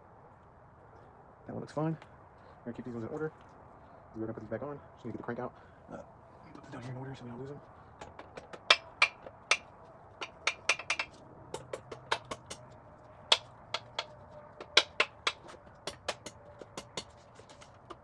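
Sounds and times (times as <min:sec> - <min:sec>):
metal parts clinking and knocking: 0:10.2 - 0:12.7, 0:13.3 - 0:18.0.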